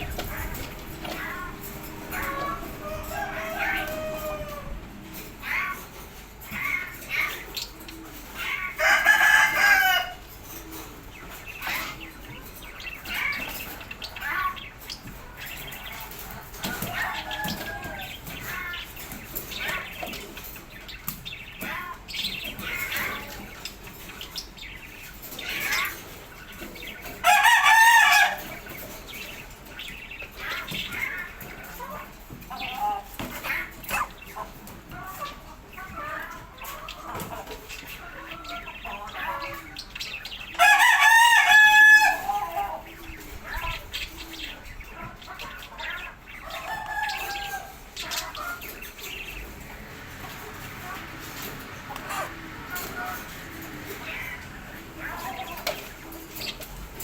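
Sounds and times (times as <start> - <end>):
rooster crowing: 0.0 - 5.9, 8.8 - 10.2, 16.7 - 18.6, 27.2 - 28.5, 40.6 - 42.8, 46.5 - 47.8
bird calls and chirps: 0.0 - 57.0.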